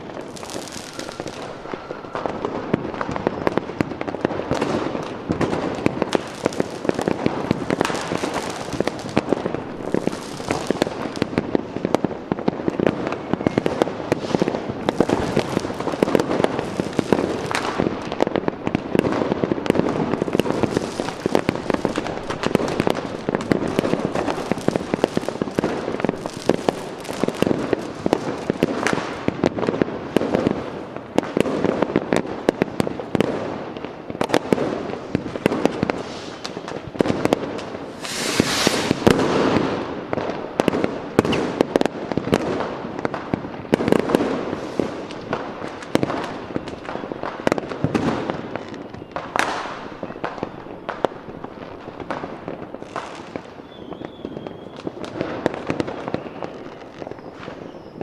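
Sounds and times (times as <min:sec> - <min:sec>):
fireworks bangs and crackles: 0:00.0 - 0:58.0
fireworks hissing burst: 0:00.3 - 0:02.5, 0:35.8 - 0:36.7, 0:37.8 - 0:39.7, 0:44.4 - 0:45.1.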